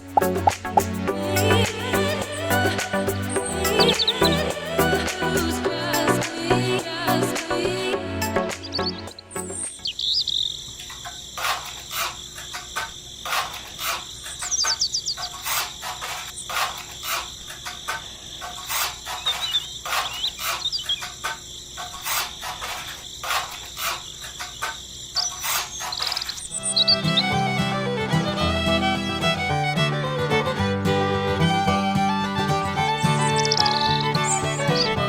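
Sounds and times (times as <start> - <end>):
bird-like chirps: 19.2 - 21.2, 33.2 - 34.9.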